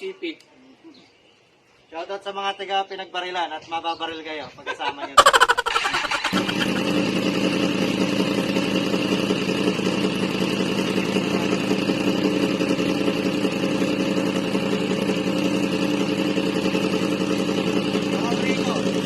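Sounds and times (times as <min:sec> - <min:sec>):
motorcycle engine idling: 0:05.2 - 0:19.0.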